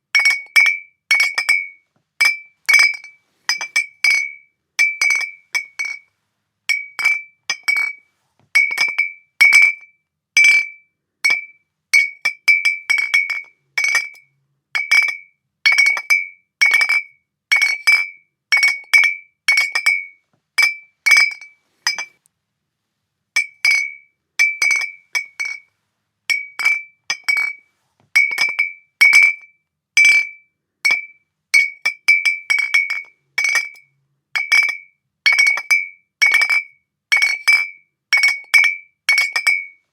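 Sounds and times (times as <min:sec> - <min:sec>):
glass bottles clinking: 0:00.2 - 0:06.0, 0:08.6 - 0:09.2, 0:18.6 - 0:22.2, 0:23.4 - 0:25.6, 0:26.3 - 0:27.6, 0:28.2 - 0:29.4, 0:30.9 - 0:33.8, 0:34.4 - 0:39.7.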